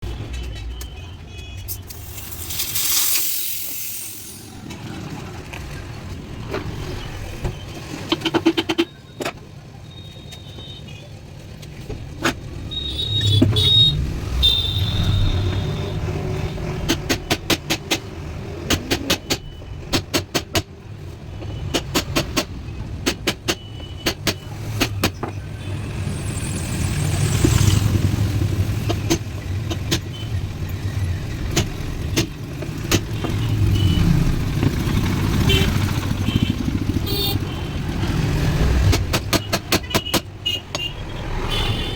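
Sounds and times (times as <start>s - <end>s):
burst of hissing air: 2.0s - 4.6s.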